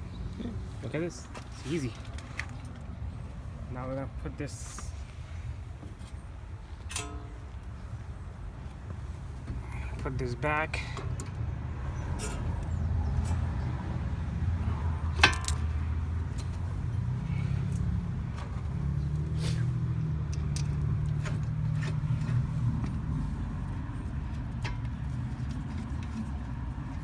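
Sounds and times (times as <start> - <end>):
low vehicle hum: 0.0 - 27.0
sharp metal clack: 6.9 - 7.4.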